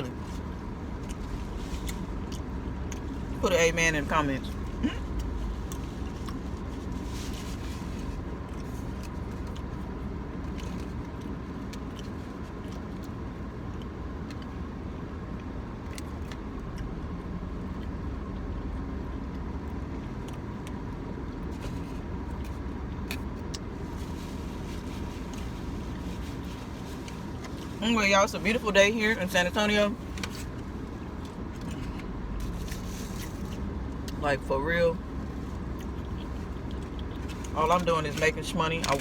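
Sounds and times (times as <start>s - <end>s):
car cabin rumble and hum: 0.0s - 39.0s.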